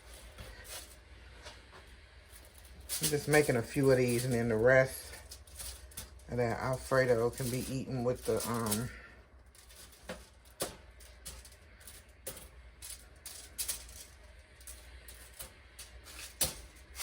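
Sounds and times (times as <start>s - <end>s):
low steady hum: 0.0s - 17.0s
kitchen utensils clicking: 2.9s - 9.0s.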